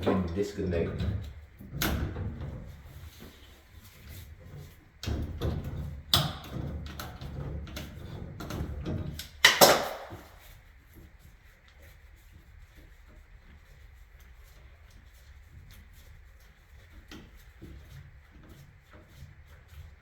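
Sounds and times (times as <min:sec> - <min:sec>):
pliers knocking and scraping on pipe: 0:05.0 - 0:10.4.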